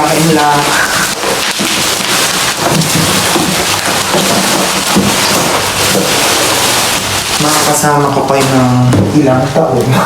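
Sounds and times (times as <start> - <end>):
people talking: 0.0 - 1.2, 7.4 - 10.0
heavy rain hiss: 0.0 - 8.9.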